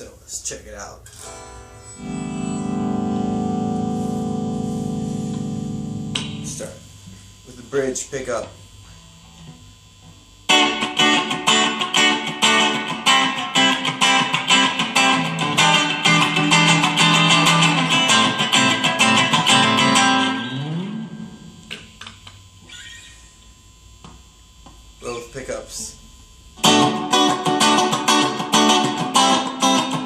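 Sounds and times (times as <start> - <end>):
electric guitar picked notes: 1.1 - 7.4, 8.9 - 22.0, 26.6 - 30.0
faint guitar string plucks: 1.5 - 6.8.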